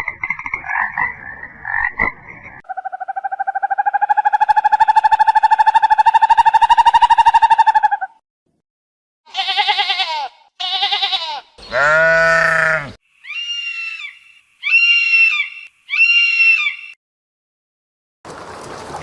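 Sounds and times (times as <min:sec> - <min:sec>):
animal calls: 0:02.7 - 0:08.2, 0:09.4 - 0:17.0.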